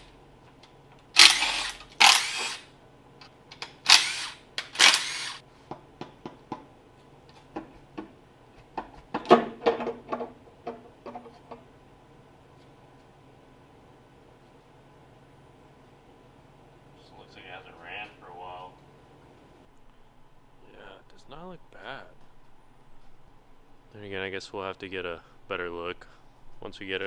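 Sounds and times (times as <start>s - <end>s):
power tool bursts: 1.2s - 2.7s, 3.8s - 5.4s.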